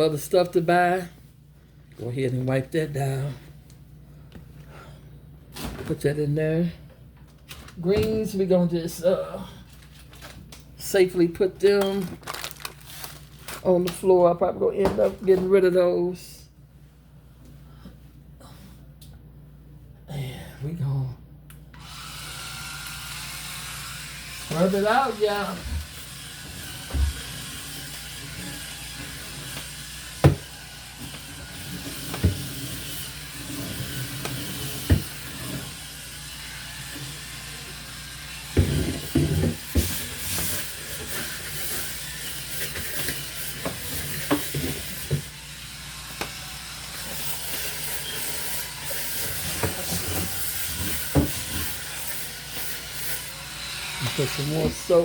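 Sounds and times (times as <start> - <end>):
electric scrub brush running: 21.8 - 55.0.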